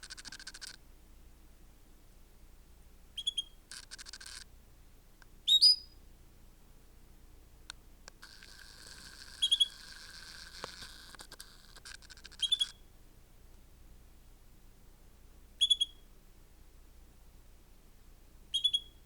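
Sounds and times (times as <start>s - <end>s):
canary chirping: 0.0s - 0.8s, 3.2s - 4.4s, 5.5s - 6.0s, 8.2s - 12.8s, 15.6s - 16.0s, 18.5s - 19.0s.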